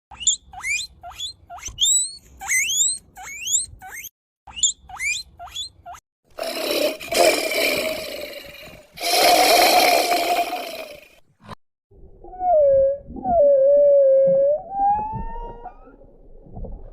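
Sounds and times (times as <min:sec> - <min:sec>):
long harsh animal calls: 0:06.4 - 0:11.2.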